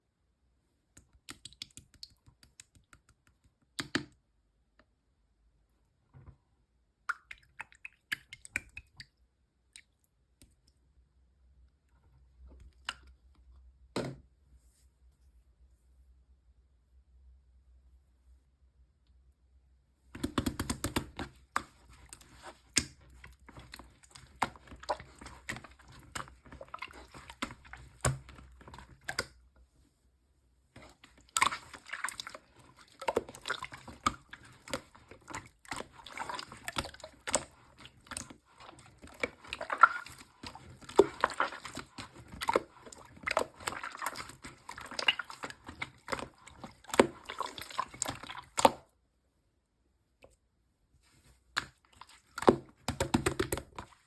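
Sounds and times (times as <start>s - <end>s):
slime squished by hand: 30.8s - 48.9s.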